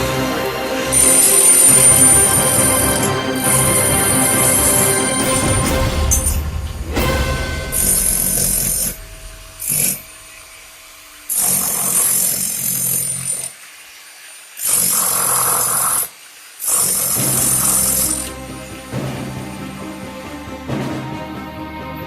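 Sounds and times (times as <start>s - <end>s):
power tool cutting: 7.8s - 18.4s.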